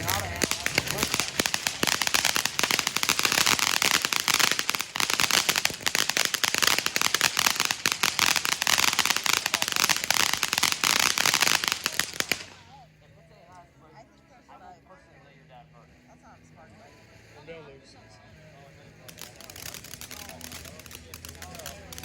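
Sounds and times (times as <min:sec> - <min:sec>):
firework crackling: 0:00.0 - 0:12.8, 0:18.9 - 0:22.0
fountain firework hissing: 0:00.0 - 0:12.9, 0:18.4 - 0:22.0.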